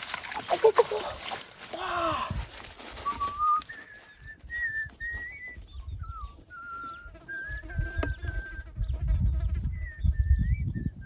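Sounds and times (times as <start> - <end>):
person whistling a tune: 3.0 - 8.6, 10.0 - 11.0.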